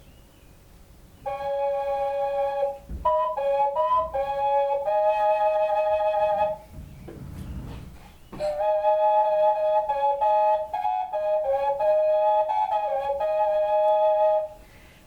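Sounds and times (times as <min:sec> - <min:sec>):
flute playing long held notes: 0:01.2 - 0:07.0, 0:08.4 - 0:14.7.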